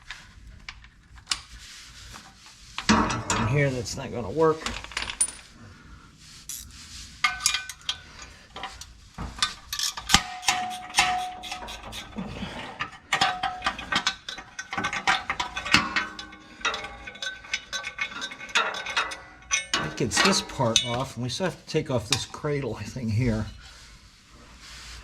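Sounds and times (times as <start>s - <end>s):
metal hardware clinking: 6.5s - 12.2s, 12.8s - 21.3s.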